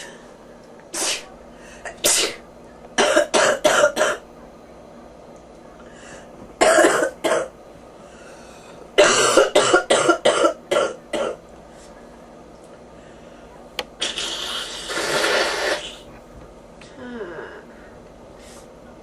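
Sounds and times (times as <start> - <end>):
person coughing: 3.0 - 4.2, 6.6 - 7.5, 9.0 - 11.4.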